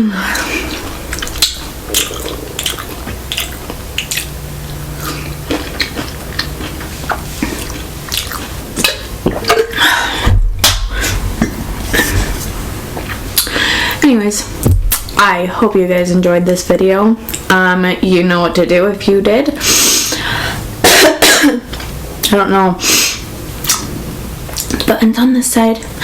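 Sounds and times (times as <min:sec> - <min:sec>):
chewing mouth sounds: 0:00.6 - 0:09.6
low bump: 0:10.2 - 0:13.1.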